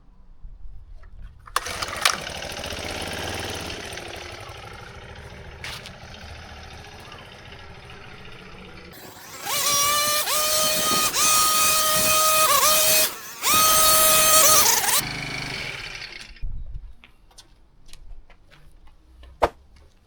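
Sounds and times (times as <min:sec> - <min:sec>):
pressure washer spraying: 0:09.0 - 0:15.8.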